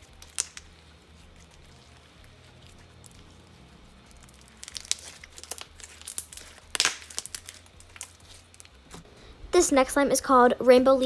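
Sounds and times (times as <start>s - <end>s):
slime crackling clicks: 0.2s - 0.6s.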